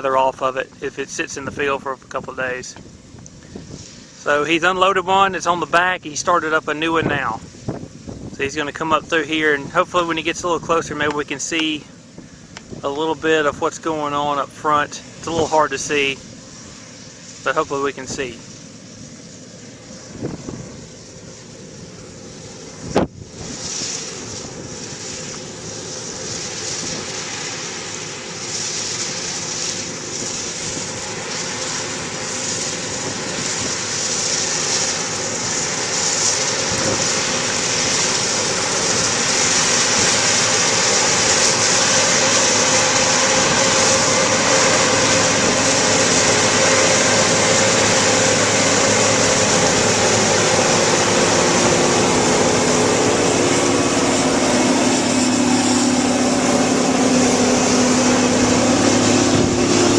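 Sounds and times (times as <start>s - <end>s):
cotton picker engine running: 19.6s - 59.9s.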